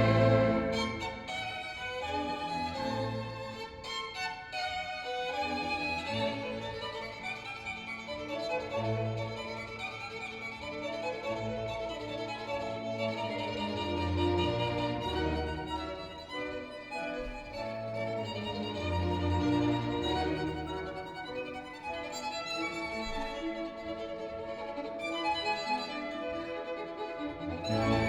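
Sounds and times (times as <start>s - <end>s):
sustained low bass notes: 0.0s - 1.0s
violin music over loudspeakers: 0.0s - 28.0s.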